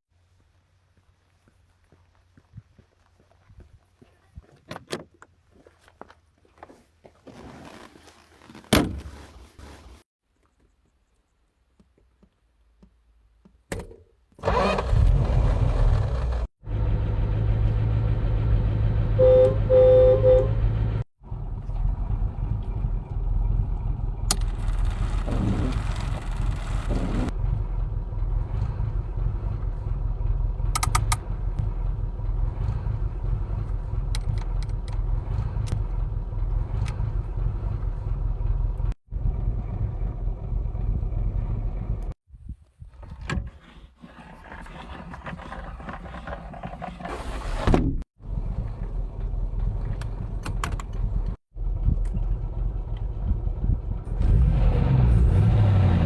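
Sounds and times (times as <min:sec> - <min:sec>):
car engine rumbling: 0:14.4 - 0:42.2, 0:48.0 - 0:56.0
car horn beeps: 0:19.2 - 0:20.7.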